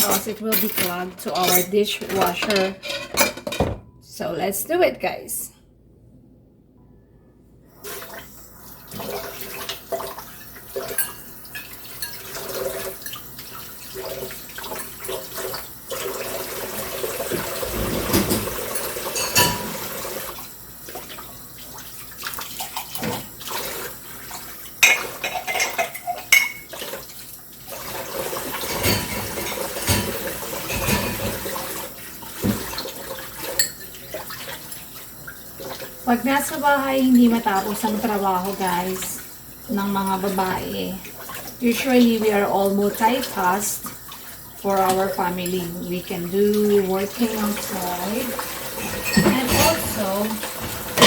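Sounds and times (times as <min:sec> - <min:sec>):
tap water running: 0:00.0 - 0:03.8, 0:07.8 - 0:51.0
dishes and cutlery clinking: 0:00.0 - 0:03.9, 0:10.9 - 0:12.4, 0:17.5 - 0:19.9, 0:24.8 - 0:26.8, 0:28.6 - 0:31.6, 0:33.4 - 0:34.3, 0:48.7 - 0:51.0.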